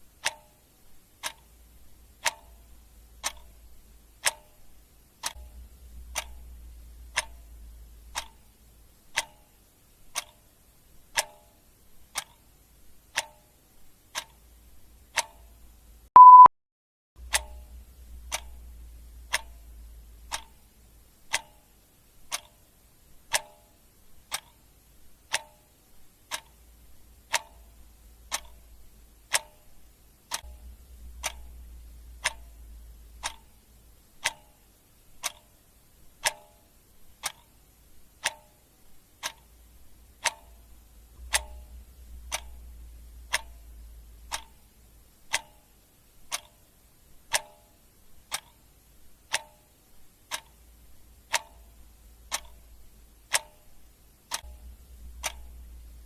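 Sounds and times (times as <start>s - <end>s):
clock ticking: 0.0s - 16.5s, 17.2s - 56.0s
short steady beep: 16.2s - 16.5s.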